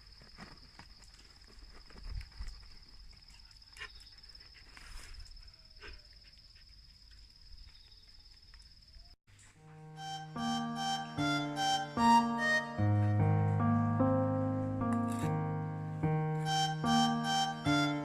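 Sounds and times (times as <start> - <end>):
music: 9.6 - 18.0.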